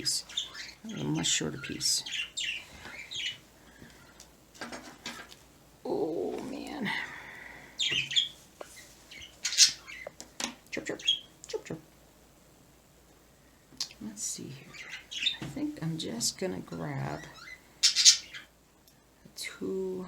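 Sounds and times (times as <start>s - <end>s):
pet birds chirping: 0.0s - 4.2s, 7.6s - 11.9s, 13.8s - 18.6s.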